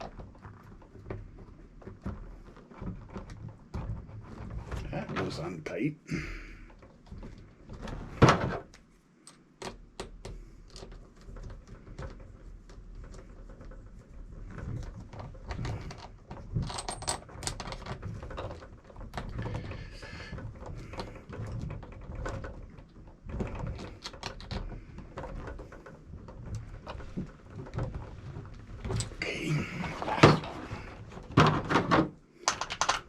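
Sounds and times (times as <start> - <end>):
plastic and metal parts knocking: 0.0 - 5.4, 6.7 - 33.0
small clicks and taps of parts: 8.7 - 28.0, 32.4 - 33.0.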